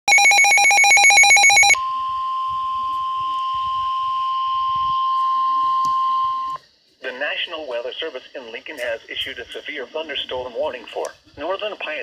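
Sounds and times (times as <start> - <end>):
steady alarm tone: 0.1 - 6.6.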